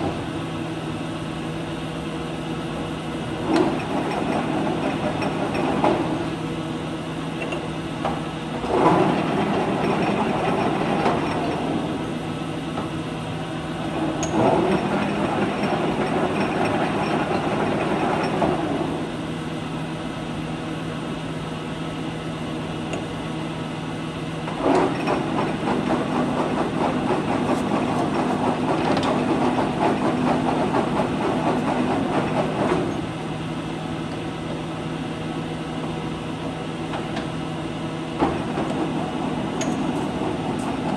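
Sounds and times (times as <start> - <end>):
lathe humming: 25.2 - 34.3.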